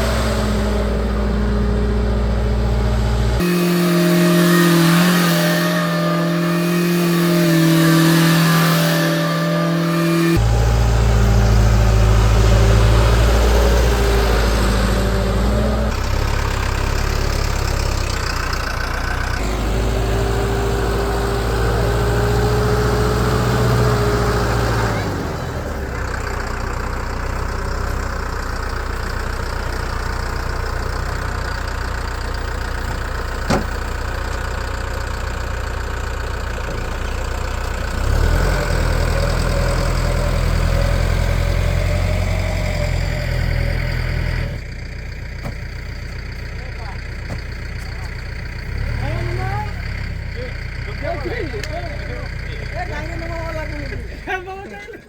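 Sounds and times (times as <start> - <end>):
diesel engine idling: 0.0 - 5.1, 7.6 - 55.0.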